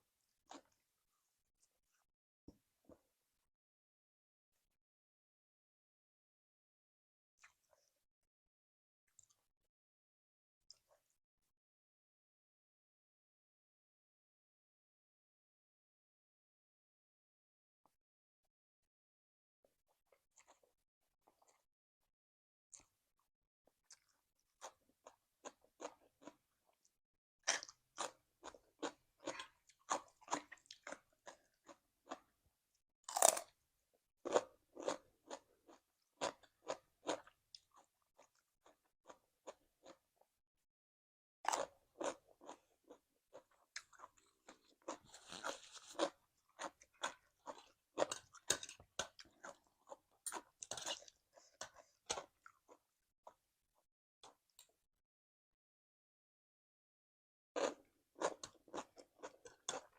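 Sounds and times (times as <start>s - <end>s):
crunchy food chewing: 23.8s - 32.3s, 33.1s - 33.6s, 34.2s - 40.0s, 41.5s - 53.4s, 57.6s - 59.9s.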